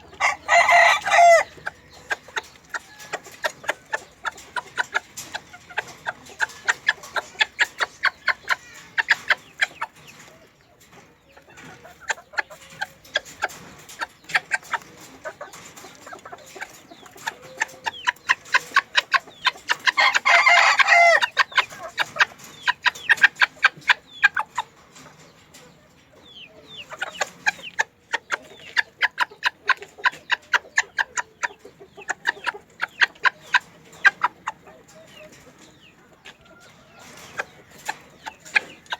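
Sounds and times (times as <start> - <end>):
chickens clucking: 0.0 - 38.9
rooster crowing: 0.2 - 1.5, 20.0 - 21.2.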